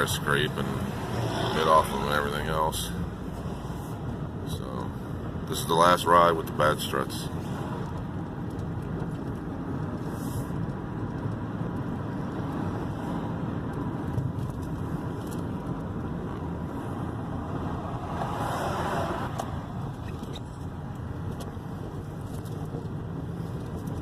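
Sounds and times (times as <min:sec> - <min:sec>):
car engine and tyre noise: 0:00.0 - 0:24.0.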